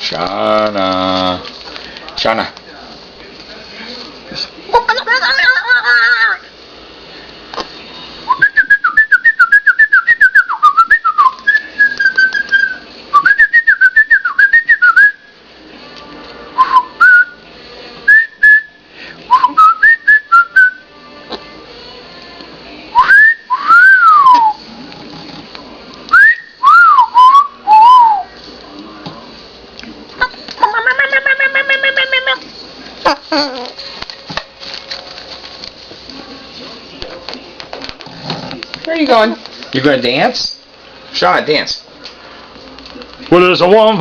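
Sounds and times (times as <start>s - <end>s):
cockatoo whistling: 8.3s - 15.3s, 23.0s - 24.6s, 26.1s - 28.3s.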